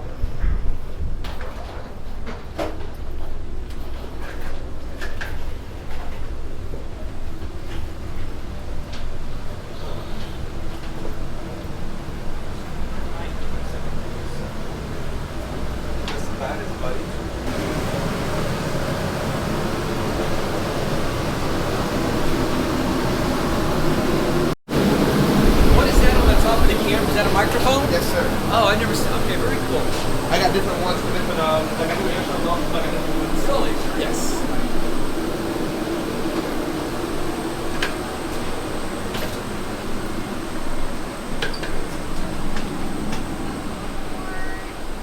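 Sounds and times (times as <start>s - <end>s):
air-conditioning rush: 0.0s - 45.0s
machinery noise: 9.6s - 45.0s.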